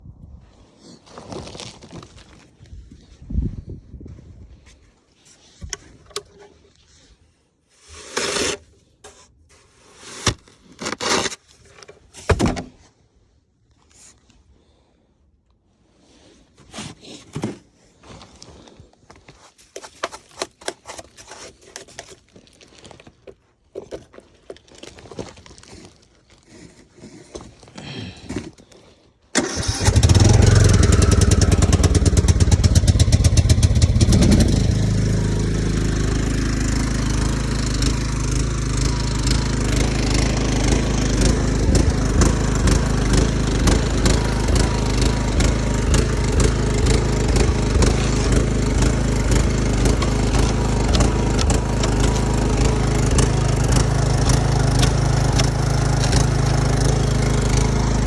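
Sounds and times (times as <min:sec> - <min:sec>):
lawn tractor engine running: 0:29.4 - 0:58.0.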